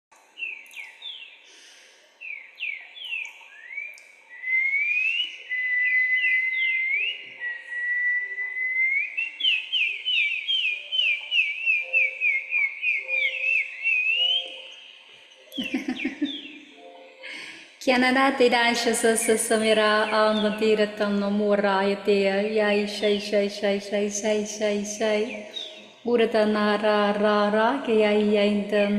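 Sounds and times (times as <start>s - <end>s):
whistled melody: 3.2s - 17.6s.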